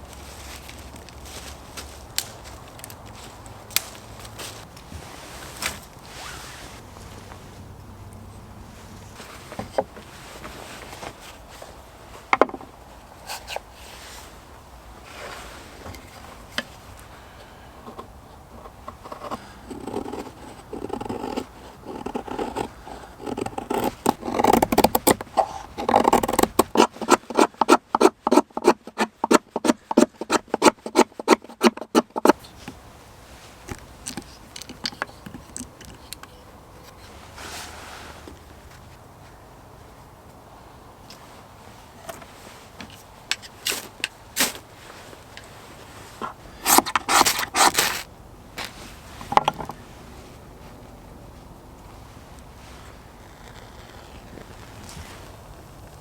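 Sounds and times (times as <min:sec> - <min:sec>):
handling and scraping noises: 0:00.0 - 0:07.6, 0:08.7 - 0:56.0
fast rasping strokes: 0:18.8 - 0:32.5, 0:46.6 - 0:48.1.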